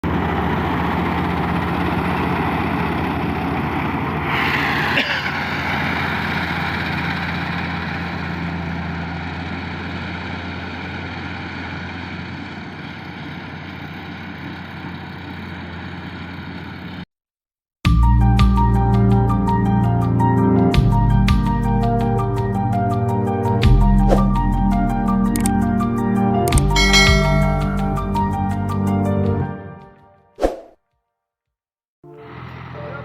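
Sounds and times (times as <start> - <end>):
diesel engine running: 0.0 - 17.0, 32.1 - 33.0.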